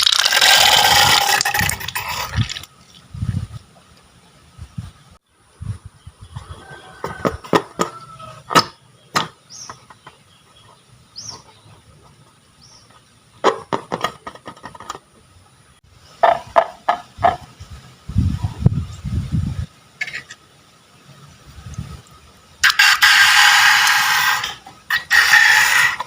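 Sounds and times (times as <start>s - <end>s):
sharp clicks and pops: 0.0s - 3.0s.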